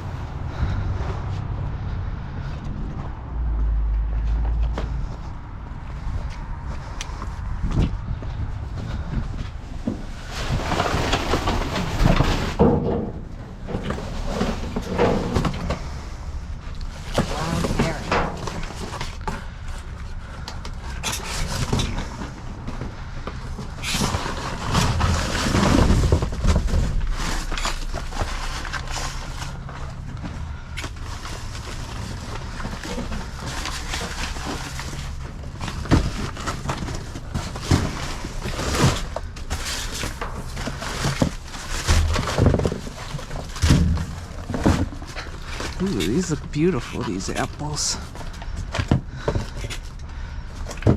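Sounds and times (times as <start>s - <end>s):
plastic bags rustling: 23.4s - 50.8s.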